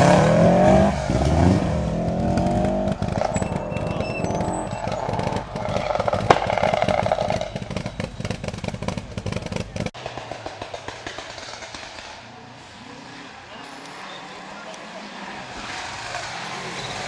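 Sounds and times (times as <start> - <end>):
rally car engine at high revs: 0.0 - 12.1
sharp crack: 5.5 - 12.3.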